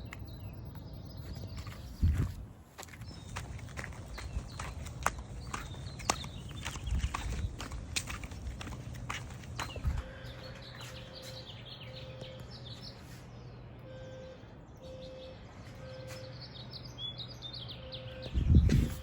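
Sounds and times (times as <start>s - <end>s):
birds chirping: 0.0s - 19.0s
faint low beep: 13.8s - 16.6s, 17.8s - 19.0s.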